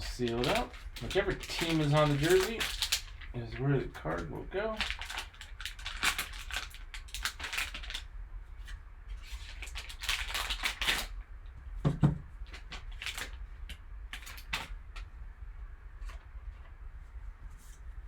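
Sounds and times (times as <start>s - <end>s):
wrapper crinkling and tearing: 0.0s - 3.4s, 4.1s - 8.1s, 9.2s - 11.1s, 12.4s - 13.4s, 14.1s - 14.7s
thump: 11.8s - 12.2s.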